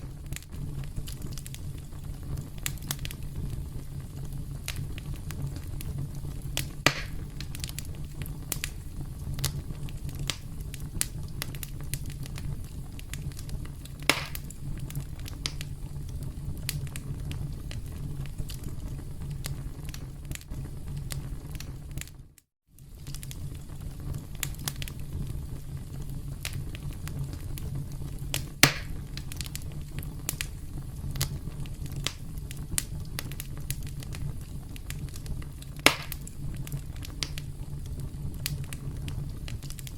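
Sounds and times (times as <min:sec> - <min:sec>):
campfire crackling: 0:00.0 - 0:39.9.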